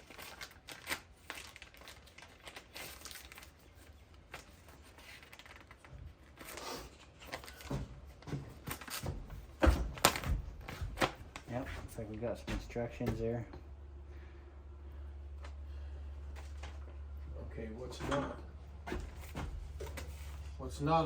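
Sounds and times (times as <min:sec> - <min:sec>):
packaging rustling and crinkling: 0:00.0 - 0:11.9.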